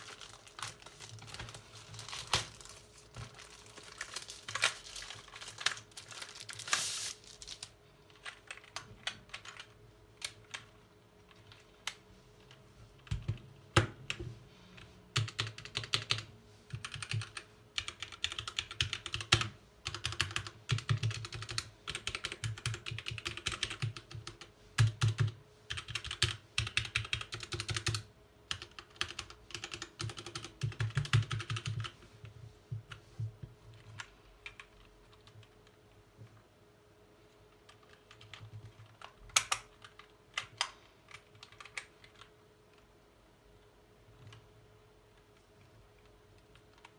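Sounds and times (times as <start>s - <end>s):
mechanical keyboard typing: 8.1s - 10.7s, 15.2s - 32.0s, 37.6s - 42.3s.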